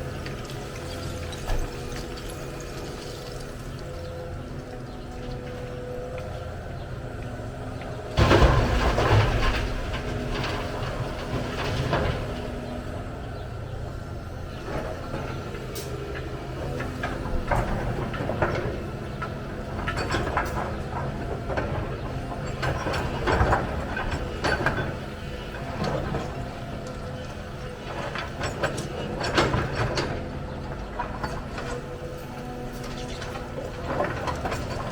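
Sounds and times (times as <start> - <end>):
excavator diesel engine running: 0.0 - 34.9
machine clanks and rattles: 0.1 - 34.9.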